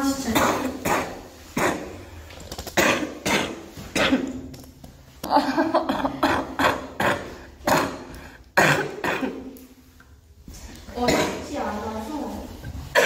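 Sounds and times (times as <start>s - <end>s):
girl coughing: 0.2s - 2.0s, 2.8s - 4.4s, 5.8s - 9.5s, 11.0s - 11.5s.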